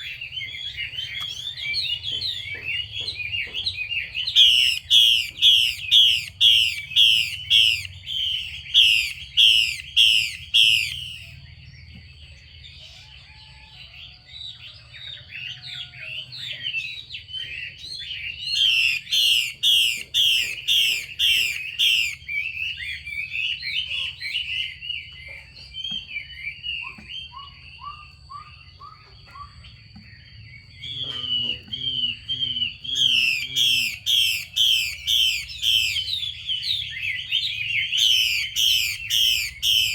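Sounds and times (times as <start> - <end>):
bird rasping calls: 0.0 - 11.4, 18.2 - 25.4, 30.9 - 39.9
bird twittering: 0.0 - 13.1, 15.1 - 39.9.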